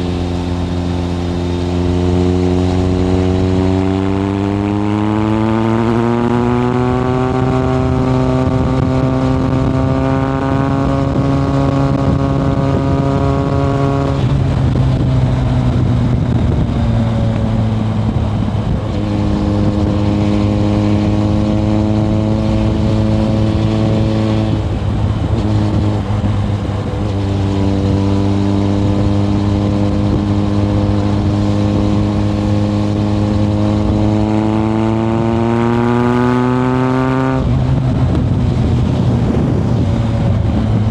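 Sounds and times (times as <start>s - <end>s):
motorcycle engine riding: 0.0s - 40.9s.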